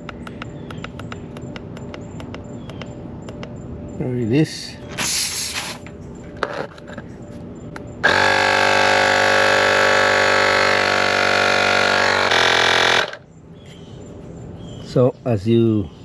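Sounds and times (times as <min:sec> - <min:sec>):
tire inflator buzzing hum: 0:05.0 - 0:05.9, 0:08.0 - 0:13.3.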